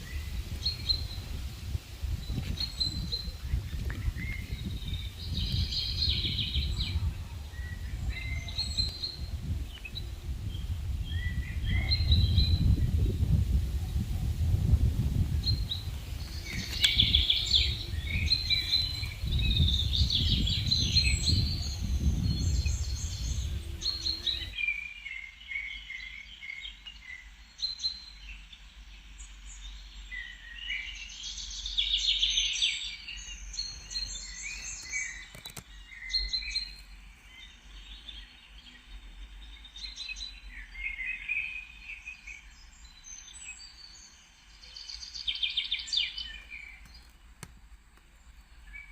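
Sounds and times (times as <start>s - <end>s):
wind rumble on microphone: 0.0s - 24.6s
songbirds singing and chirping: 0.0s - 48.9s.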